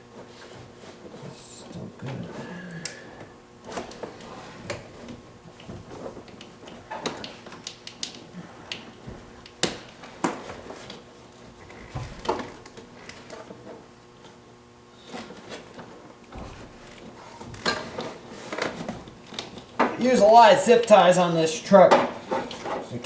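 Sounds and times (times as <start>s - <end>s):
clicks and knocks of hand work: 0.2s - 14.4s, 15.0s - 20.1s, 21.9s - 23.0s.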